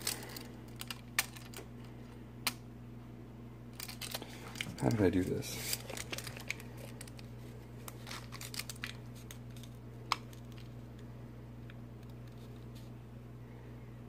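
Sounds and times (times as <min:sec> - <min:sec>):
steady low hum: 0:00.0 - 0:14.0
handling clicks and rustles: 0:03.7 - 0:11.0.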